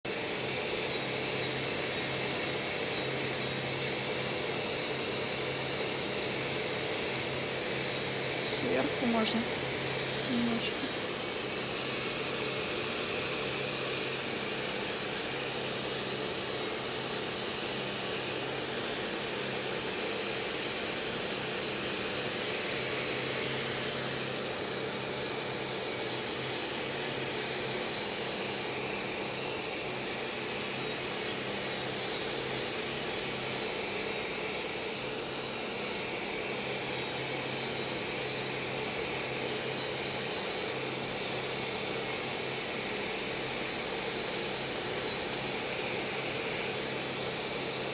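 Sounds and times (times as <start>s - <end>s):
vacuum motor running: 0.1s - 13.6s.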